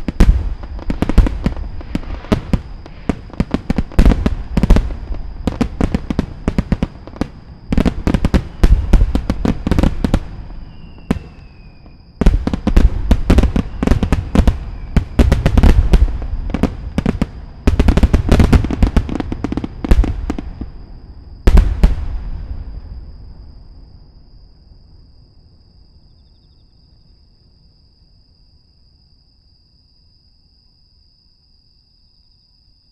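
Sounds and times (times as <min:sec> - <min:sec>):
firework shells bursting: 0:00.0 - 0:20.8
firework crackles: 0:00.0 - 0:23.9.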